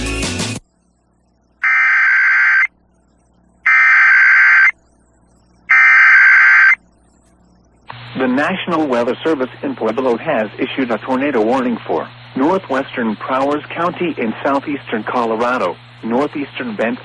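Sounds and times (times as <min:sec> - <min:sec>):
digital data tones: 0:01.6 - 0:02.7, 0:03.7 - 0:04.8, 0:05.7 - 0:06.9.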